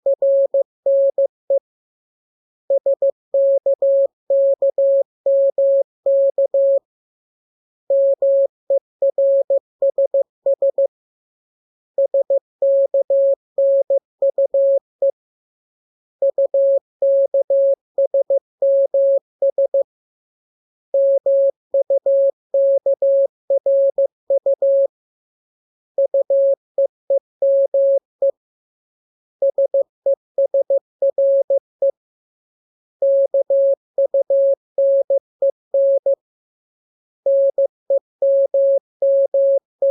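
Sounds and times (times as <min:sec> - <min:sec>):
morse code tone: 0:33.0 - 0:35.2, 0:35.8 - 0:36.2, 0:37.3 - 0:39.9.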